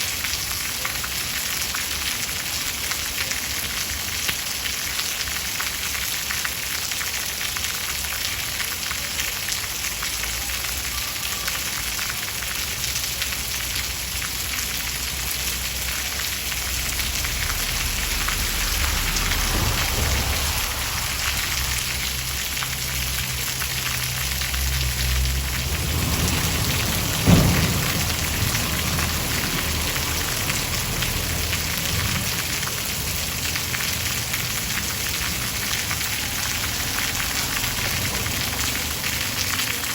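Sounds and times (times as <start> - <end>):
steady rain falling: 0.0 - 39.9
thunder rumbling: 16.6 - 39.2
sharp thunderclap: 18.0 - 22.5, 25.4 - 30.6.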